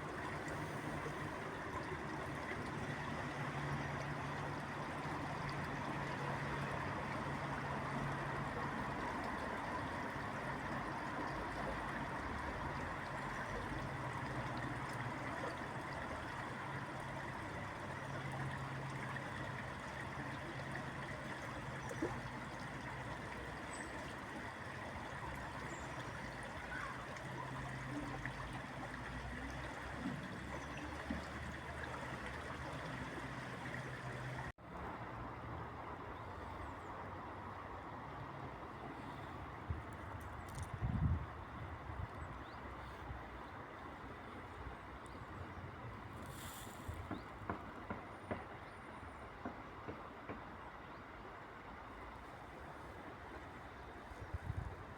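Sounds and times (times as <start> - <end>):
flowing water rushing: 0.0 - 36.1.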